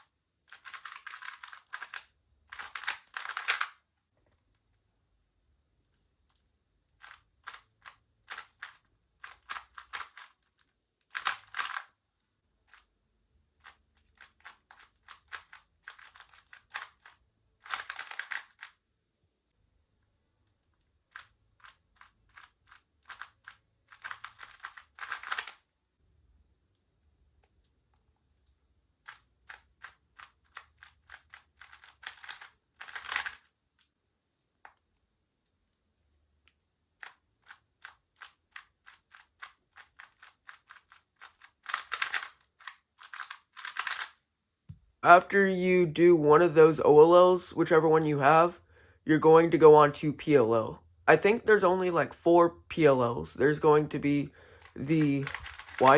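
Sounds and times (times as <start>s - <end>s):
puzzle cube plastic clicks: 0.5s - 3.9s, 7.0s - 12.0s, 12.6s - 18.8s, 20.5s - 25.7s, 28.9s - 35.6s, 36.4s - 44.2s, 53.5s - 55.9s.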